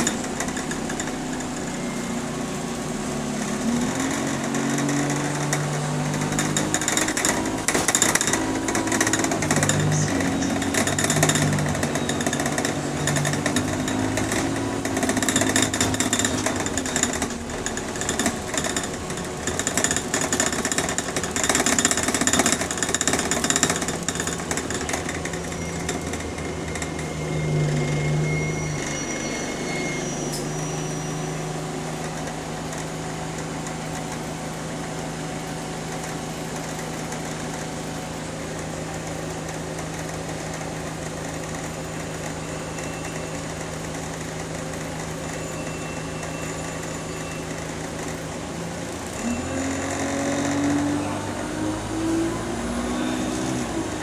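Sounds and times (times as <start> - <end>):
high-pitched squeal: 0.0 - 19.9, 21.4 - 32.6
bus engine running: 0.0 - 54.0
bus interior rattling: 0.0 - 54.0.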